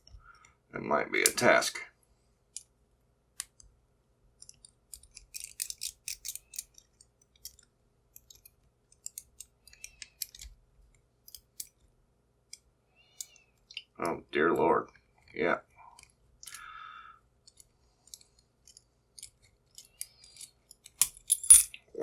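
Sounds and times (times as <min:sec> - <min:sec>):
metal clicks and scrapes of padlock: 0:04.4 - 0:10.6, 0:11.2 - 0:11.8, 0:15.9 - 0:16.6, 0:17.4 - 0:21.8.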